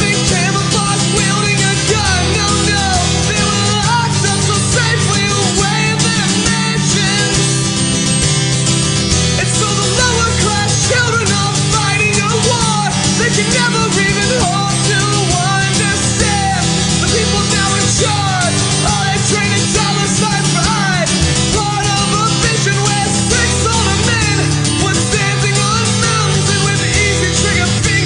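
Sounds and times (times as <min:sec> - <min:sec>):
rock band playing: 0:00.0 - 0:28.0
sliding melody line: 0:00.0 - 0:28.0.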